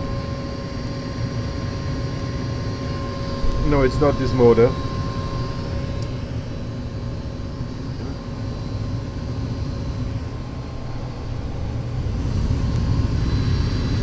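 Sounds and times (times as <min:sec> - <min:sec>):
furnace running: 0:00.0 - 0:14.0
high-pitched squeal: 0:02.8 - 0:05.8.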